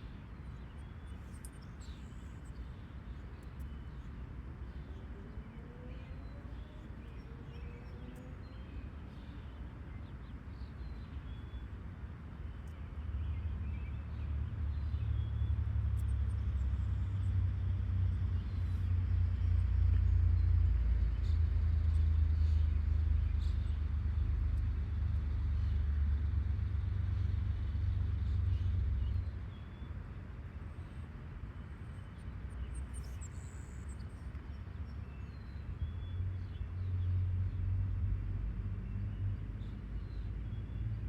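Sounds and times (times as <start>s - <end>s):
vehicle engine rumble: 11.6s - 41.0s.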